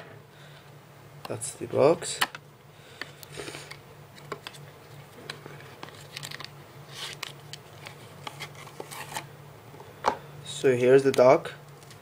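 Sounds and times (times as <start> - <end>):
packaging rustling and clicking: 4.2 - 9.2.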